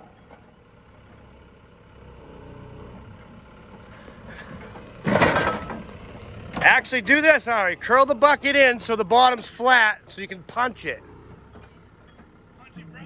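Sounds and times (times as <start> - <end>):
excavator engine and hydraulics: 0.0 - 13.0
bucket crashing into metal: 5.0 - 5.8.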